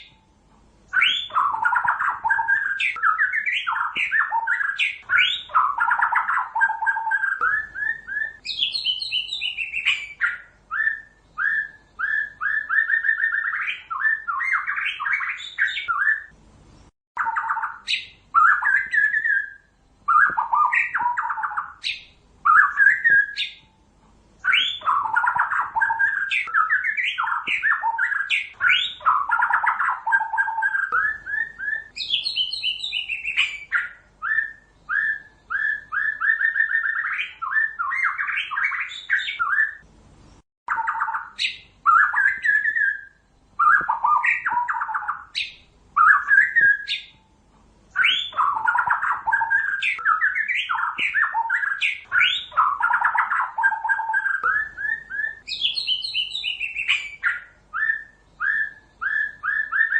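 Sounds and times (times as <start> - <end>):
bird singing whistled notes: 0.0 - 16.4, 17.2 - 23.8, 24.4 - 39.9, 40.7 - 59.9.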